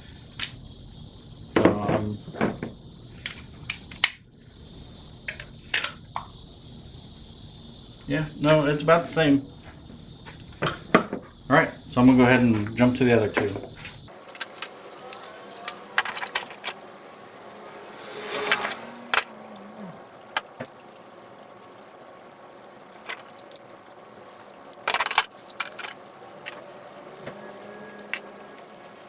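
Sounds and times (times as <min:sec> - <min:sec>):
short whoosh: 0:14.1 - 0:22.5
hand tools clinking on metal: 0:14.1 - 0:29.0.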